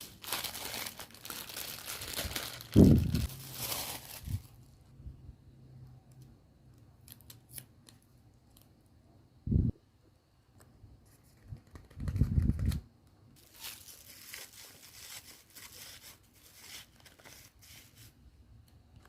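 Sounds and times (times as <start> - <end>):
paper tearing and crinkling: 0.0 - 4.6, 13.4 - 18.0.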